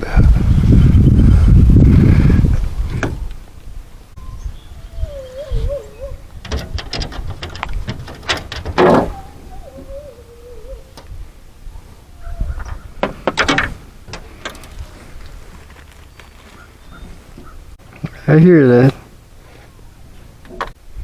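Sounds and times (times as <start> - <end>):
dog whining: 4.2 - 6.4, 8.8 - 11.0, 11.7 - 12.9
sharp knocks and clatters: 6.4 - 9.2, 13.0 - 14.7.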